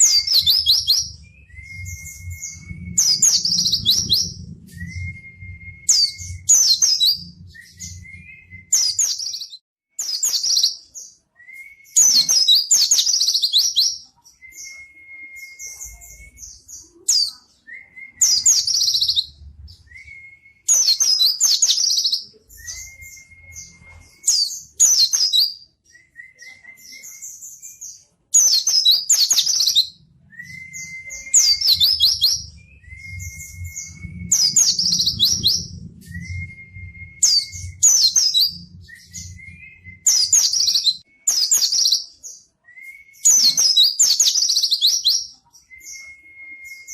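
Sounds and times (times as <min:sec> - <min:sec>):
thin whistled bird notes: 0:00.0 - 0:46.9
bird twittering rapidly: 0:30.4 - 0:41.0.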